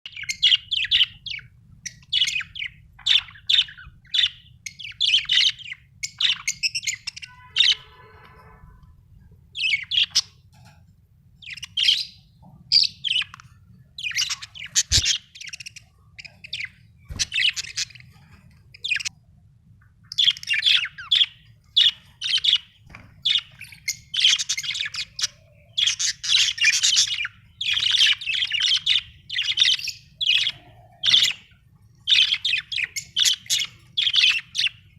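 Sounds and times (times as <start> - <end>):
budgerigar chirping: 0.1 - 7.9, 9.6 - 10.4, 14.0 - 18.1, 20.1 - 34.8.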